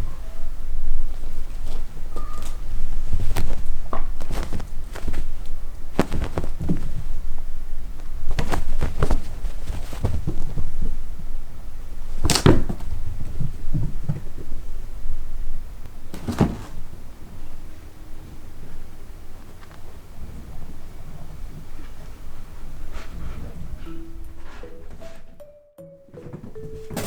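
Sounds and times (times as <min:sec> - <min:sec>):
knocks and thumps: 0:01.4 - 0:07.2, 0:08.2 - 0:11.0, 0:12.1 - 0:14.6, 0:16.1 - 0:17.0, 0:26.1 - 0:27.0.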